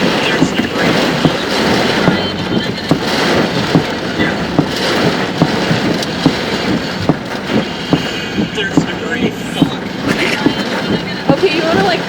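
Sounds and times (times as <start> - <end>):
heavy rain on a vehicle: 0.0 - 12.0
regular knocking: 0.0 - 12.0
wind rushing: 0.0 - 12.0.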